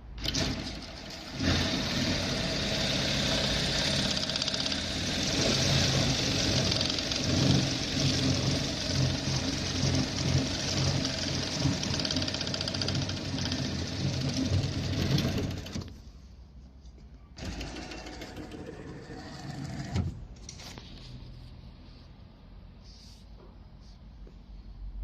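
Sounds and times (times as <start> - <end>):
sewing machine stitching rapidly: 0.2 - 16.0, 17.4 - 20.1.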